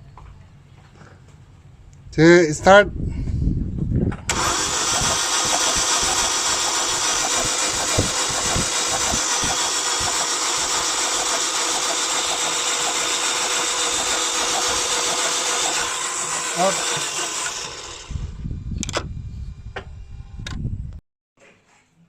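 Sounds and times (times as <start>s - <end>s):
starter motor cranking engine: 4.3s - 19.0s.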